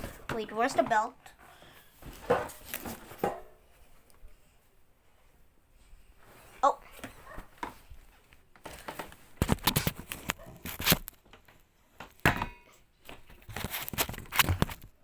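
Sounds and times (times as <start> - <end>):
hands rustling inside washing machine: 0.0 - 12.2.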